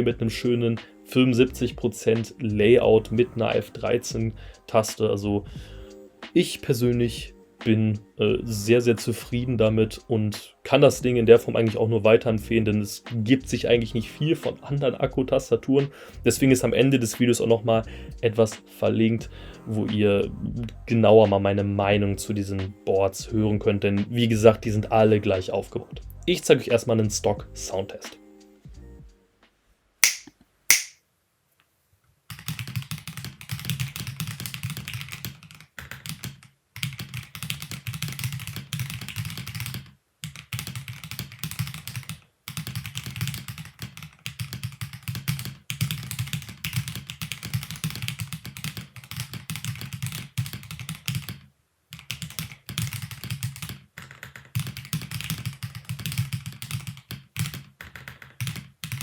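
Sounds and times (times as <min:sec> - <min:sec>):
sharp clicks: 0:30.0 - 0:31.0
mechanical keyboard typing: 0:32.3 - 0:59.0.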